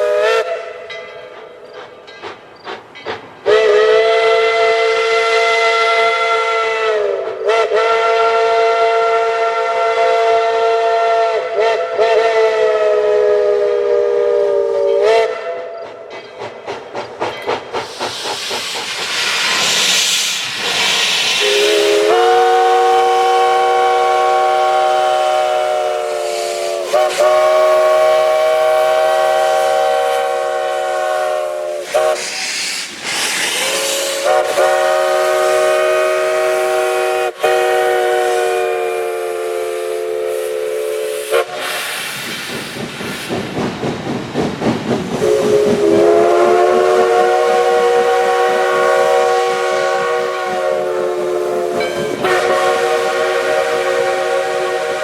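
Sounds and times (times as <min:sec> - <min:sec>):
steam locomotive whistle blasts: 0:00.0 - 0:01.0, 0:03.4 - 0:15.8, 0:18.5 - 0:42.0, 0:45.2 - 0:55.0
locomotive chuffing: 0:01.3 - 0:03.9, 0:15.8 - 0:36.8, 0:39.4 - 0:55.0.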